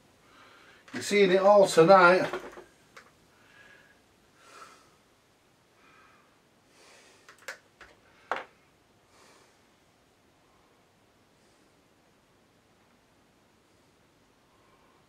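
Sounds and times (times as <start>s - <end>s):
faint breathing: 0.2s - 1.0s, 3.3s - 12.1s, 13.6s - 15.0s.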